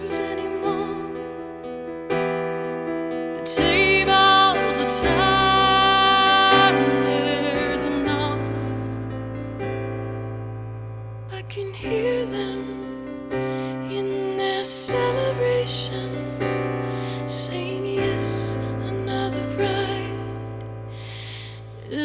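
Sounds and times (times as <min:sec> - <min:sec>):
gentle electric piano chords: 0:00.0 - 0:22.0.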